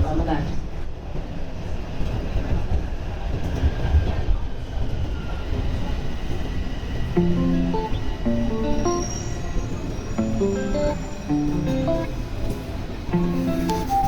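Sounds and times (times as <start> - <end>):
train wheels rumbling on track: 0.0 - 14.0
faint high squeal: 7.4 - 12.2.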